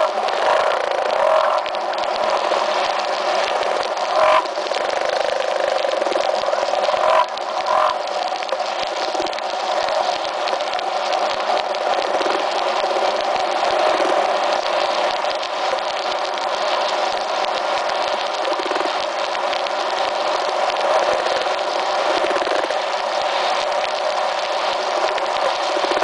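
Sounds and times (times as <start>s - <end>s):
frog chorus: 0.0s - 1.7s, 4.1s - 8.0s, 18.4s - 18.9s, 22.0s - 22.8s, 25.0s - 26.0s
louder frog calls: 0.0s - 2.3s, 3.6s - 8.1s, 18.4s - 19.0s, 20.8s - 22.9s.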